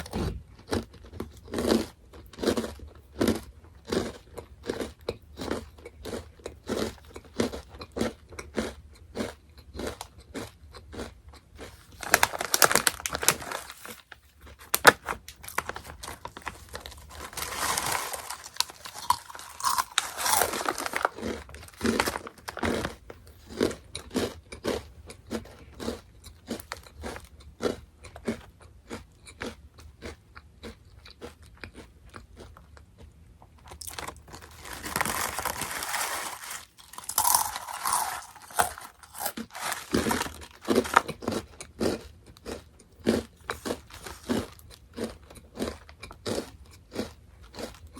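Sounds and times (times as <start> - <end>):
crunchy snack chewing: 0.0 - 47.9.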